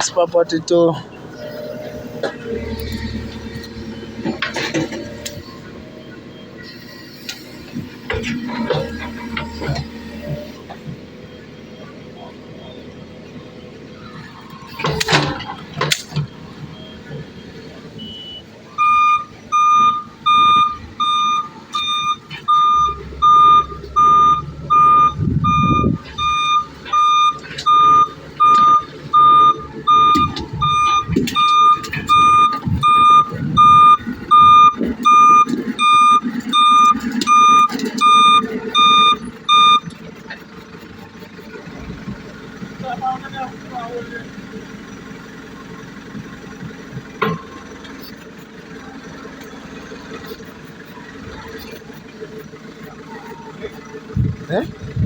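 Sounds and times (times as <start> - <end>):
backhoe engine running: 0.0 - 55.0
reversing alarm beeping: 1.3 - 41.4.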